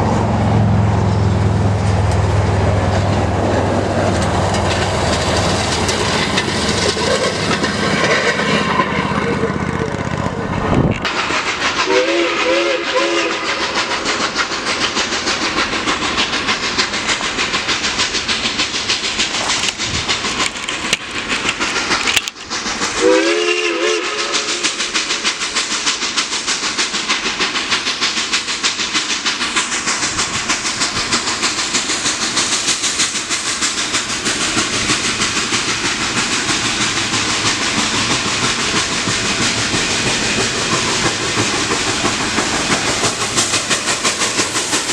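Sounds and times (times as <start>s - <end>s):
steam locomotive exhaust: 0.0s - 44.9s
steam hissing: 1.0s - 44.9s
multi-tone train whistle: 11.8s - 13.8s, 23.0s - 25.2s.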